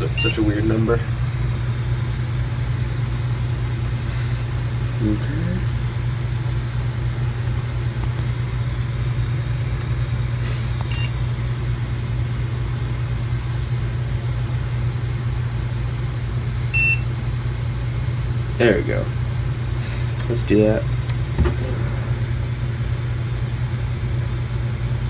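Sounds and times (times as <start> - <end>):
computer fans whirring: 0.0 - 25.0
faint electronic beeps: 0.1 - 0.5.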